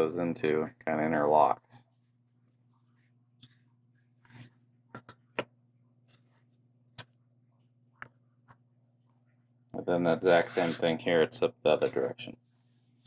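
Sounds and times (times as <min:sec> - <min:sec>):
steady low hum: 0:09.7 - 0:12.4.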